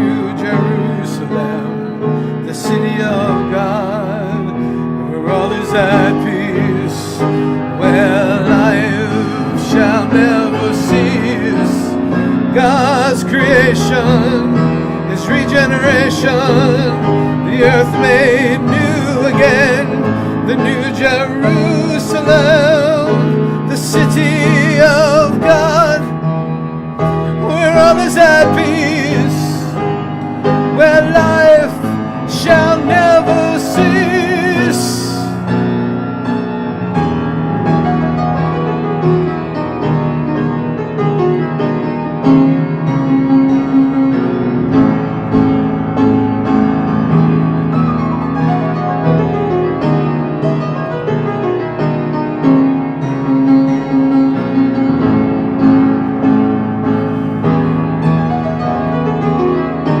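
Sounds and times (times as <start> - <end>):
person singing with vibrato: 0.0 - 26.3, 27.0 - 35.5
slow piano chords: 0.0 - 60.0.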